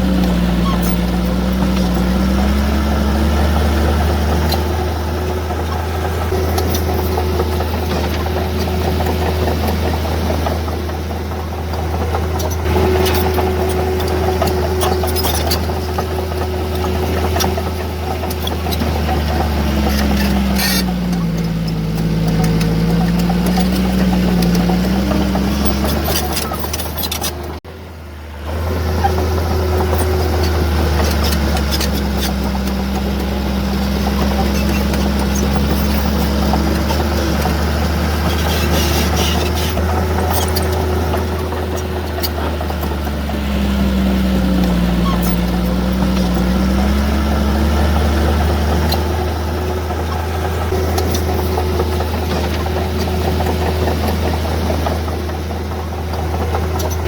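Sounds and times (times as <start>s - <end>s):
heavy diesel engine running: 0.0s - 57.0s.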